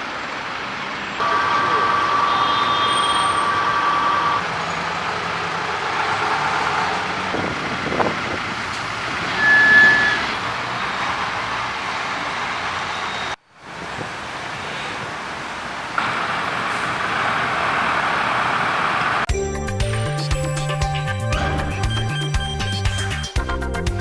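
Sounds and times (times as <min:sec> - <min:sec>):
trucks and cars running: 0:00.0 - 0:24.0
short high beep: 0:01.2 - 0:04.4, 0:09.4 - 0:10.3
steady whine: 0:01.2 - 0:04.4.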